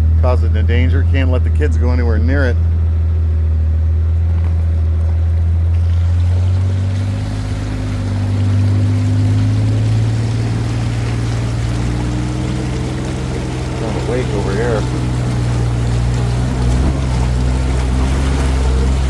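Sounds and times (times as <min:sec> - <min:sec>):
vehicle engine running: 0:00.0 - 0:19.0
water rushing and splashing: 0:04.3 - 0:19.0.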